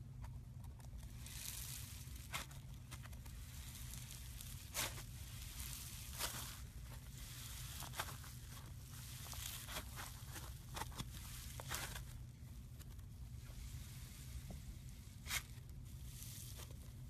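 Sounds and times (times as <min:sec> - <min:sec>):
slime crackling and popping: 0:00.7 - 0:13.1.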